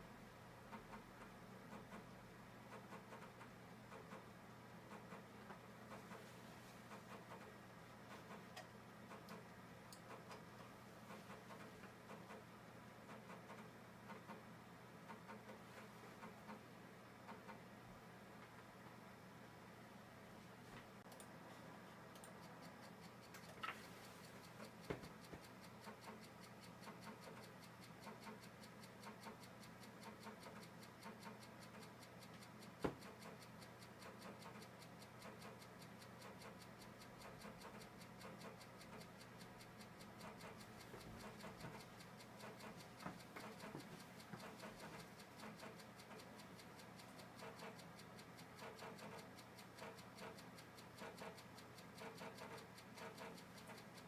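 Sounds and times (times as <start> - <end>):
rapid regular ticking: 0.5 - 17.8, 22.0 - 54.0
sharp clicks: 22.1 - 54.0.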